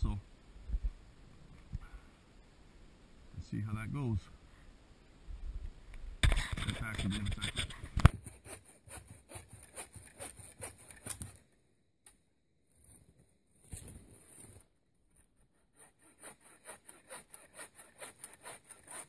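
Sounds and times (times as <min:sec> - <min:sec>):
hand saw cutting dry wood: 0:06.3 - 0:11.3, 0:15.4 - 0:19.0.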